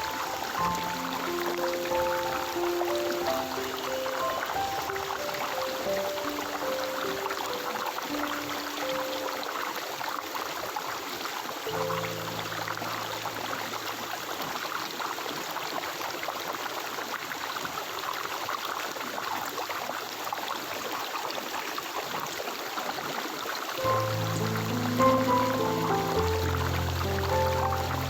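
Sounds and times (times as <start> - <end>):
soft low held chord music: 0.0 - 9.8, 11.7 - 14.2, 23.8 - 28.0
stream water flowing: 0.0 - 28.0.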